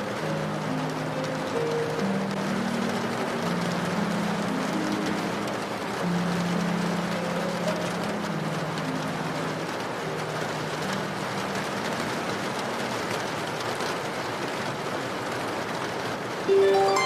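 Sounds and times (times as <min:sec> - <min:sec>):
low sustained musical notes: 0:00.0 - 0:13.0, 0:16.5 - 0:17.0
steady rain falling: 0:00.0 - 0:17.0
harp notes plucked: 0:16.5 - 0:17.0.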